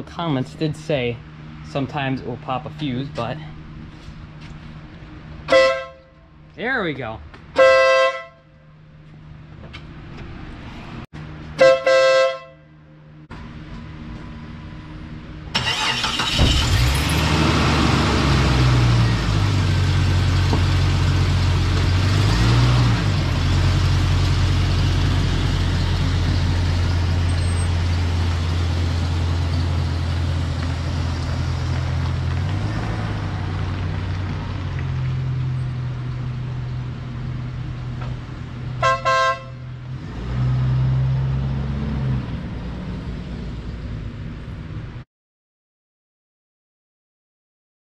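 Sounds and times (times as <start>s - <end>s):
electric air horn blasts: 5.5s - 6.2s, 7.6s - 8.6s, 11.6s - 12.6s, 38.8s - 39.7s
car engine starting and running: 13.1s - 38.9s.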